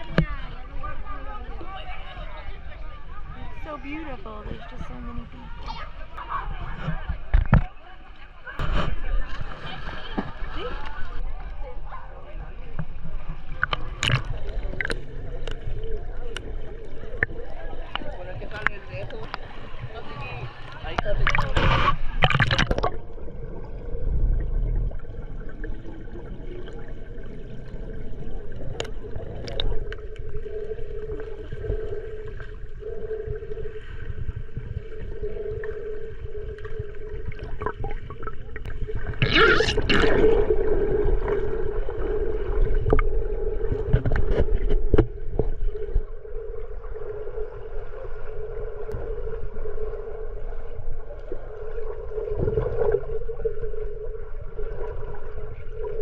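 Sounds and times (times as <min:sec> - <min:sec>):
water gurgling and sloshing: 0:00.0 - 0:56.0
steady droning hum: 0:11.6 - 0:56.0
water splash: 0:17.0 - 0:27.4, 0:36.4 - 0:45.9.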